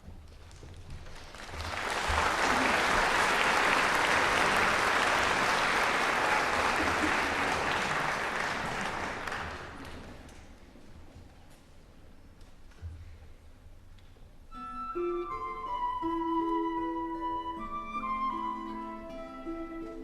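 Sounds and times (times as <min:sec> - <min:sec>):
audience applauding: 0:01.0 - 0:10.3.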